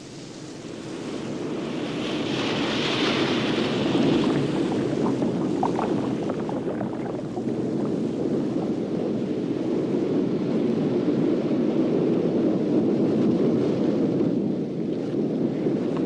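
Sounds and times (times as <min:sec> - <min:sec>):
heavy surf: 0:00.0 - 0:12.4
wind: 0:00.0 - 0:16.0.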